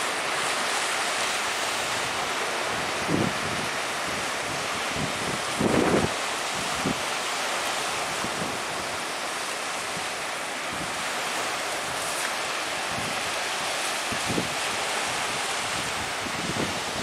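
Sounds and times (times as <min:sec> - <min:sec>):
surf: 0:00.0 - 0:17.0
wind gusts buffeting microphone: 0:01.9 - 0:07.1, 0:08.0 - 0:09.0, 0:12.8 - 0:17.0
wind blowing over microphone: 0:01.9 - 0:07.2, 0:08.0 - 0:09.1, 0:12.8 - 0:17.0.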